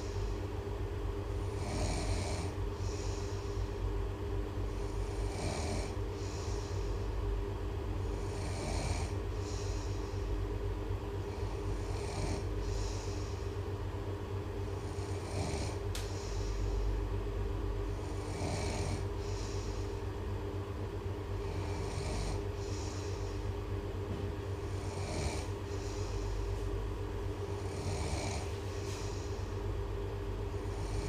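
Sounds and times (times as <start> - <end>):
steady low hum: 0.0 - 31.0
person snoring: 1.4 - 3.5, 4.7 - 7.0, 8.1 - 10.2, 11.3 - 13.4, 14.8 - 16.6, 17.9 - 19.9, 21.4 - 23.4, 24.6 - 26.6, 27.5 - 29.5, 30.6 - 31.0.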